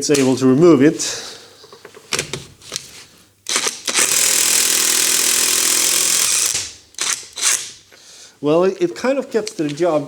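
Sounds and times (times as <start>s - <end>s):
impact wrench hammering: 3.5s - 7.8s.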